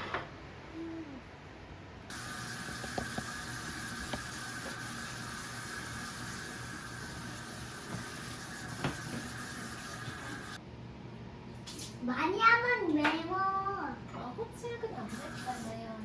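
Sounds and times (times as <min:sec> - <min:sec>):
tap running into sink: 0:02.6 - 0:04.8, 0:07.8 - 0:10.2.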